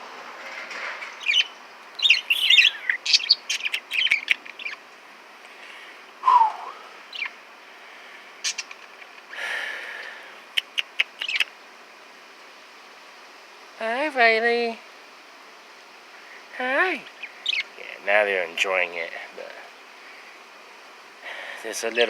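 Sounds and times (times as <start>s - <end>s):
caged birds chirping: 0.4s - 22.0s
low bird call: 1.2s - 4.8s, 6.2s - 7.4s.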